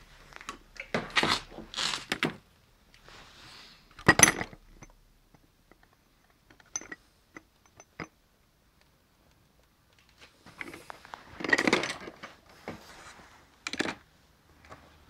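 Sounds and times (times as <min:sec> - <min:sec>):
metallic clinks and knocks: 0:04.0 - 0:08.2.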